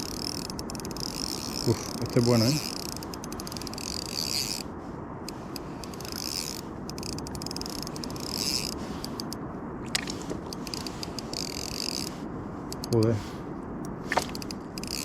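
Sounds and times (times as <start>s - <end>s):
fishing reel clicking: 0.0s - 1.6s, 2.2s - 4.6s, 5.9s - 8.7s, 10.6s - 12.1s, 14.4s - 15.0s
wind noise: 0.0s - 15.0s
water noise: 9.8s - 12.2s, 13.9s - 15.0s.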